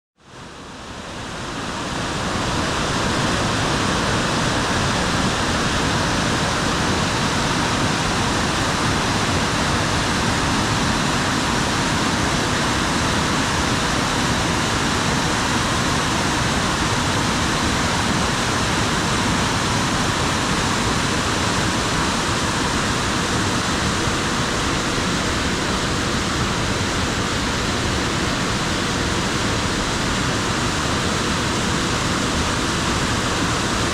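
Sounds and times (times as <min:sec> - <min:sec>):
waterfall rushing: 0:00.3 - 0:33.9.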